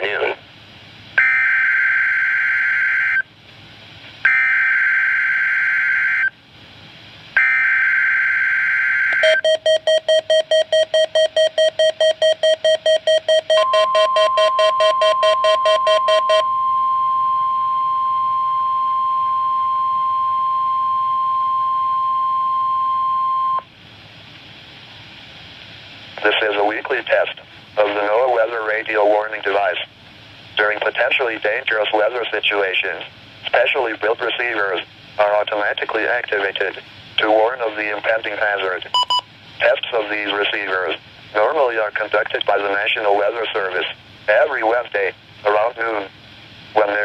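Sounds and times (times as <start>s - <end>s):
steady warning alarm tone: 1.2s - 3.2s, 4.3s - 6.3s, 7.4s - 23.6s
pulsing beeps: 9.1s - 23.6s.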